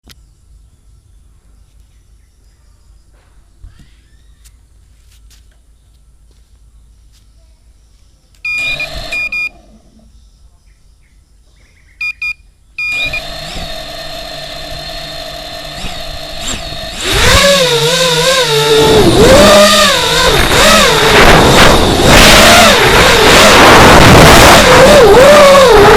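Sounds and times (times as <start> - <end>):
short electronic beeps: 8.4 - 9.6, 12.0 - 13.2
drone motors whining: 8.5 - 9.6, 12.8 - 25.9.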